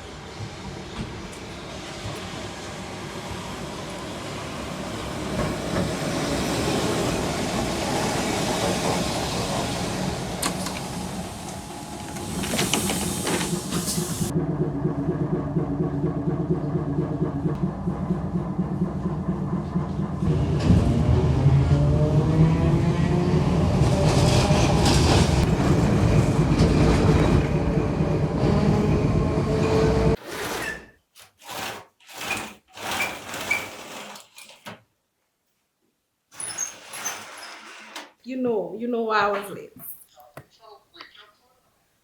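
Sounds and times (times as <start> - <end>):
train rumbling and rushing: 0.0 - 30.2
dull low hum: 14.2 - 22.9.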